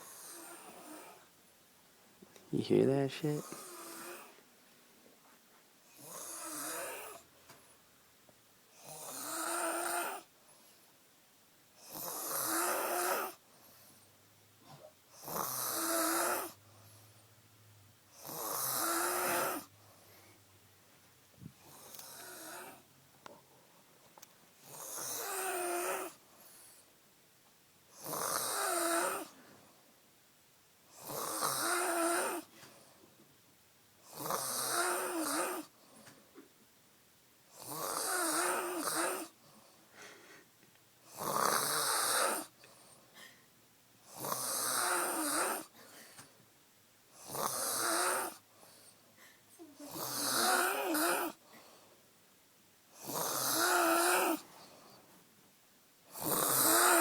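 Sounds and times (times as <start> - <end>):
woman snoring loudly: 3.4 - 4.3, 6.0 - 7.2, 8.8 - 10.3, 11.8 - 13.4, 15.2 - 16.6, 18.2 - 19.7, 21.9 - 22.8, 24.6 - 26.2, 28.0 - 29.4, 31.0 - 32.5, 34.1 - 35.7, 37.6 - 39.4, 41.1 - 42.5, 44.1 - 45.7, 47.2 - 48.4, 49.7 - 51.4, 53.0 - 54.5, 56.1 - 57.0.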